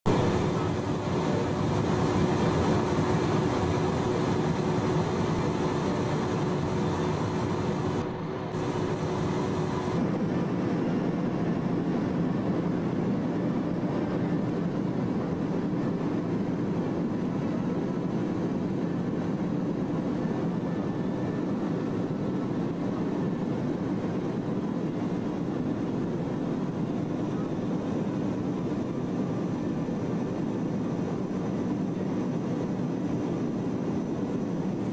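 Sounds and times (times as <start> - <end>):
jet engines and airflow rushing: 0.0 - 34.9
low cabin hum: 0.1 - 10.4.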